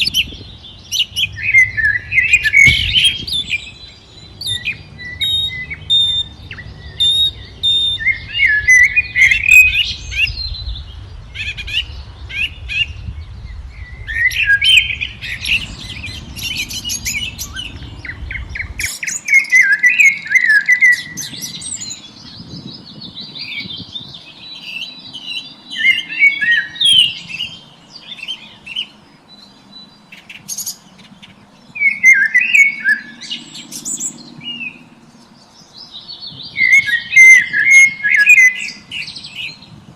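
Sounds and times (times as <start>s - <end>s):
low rumble: 0.0s - 18.9s
songbirds singing and chirping: 0.0s - 39.9s.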